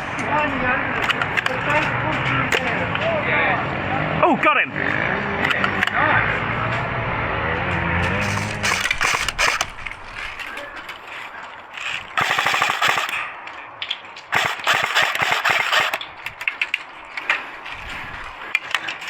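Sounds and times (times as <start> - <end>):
airsoft guns firing full auto: 1.0 - 1.9, 5.4 - 6.0, 8.2 - 9.8, 12.2 - 13.4, 14.3 - 16.2.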